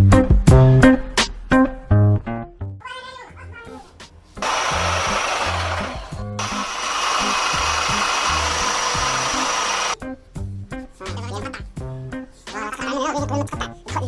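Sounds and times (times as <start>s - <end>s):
background music with bass: 0.0s - 2.8s, 4.4s - 14.0s
motor-driven machine whining: 4.4s - 10.0s.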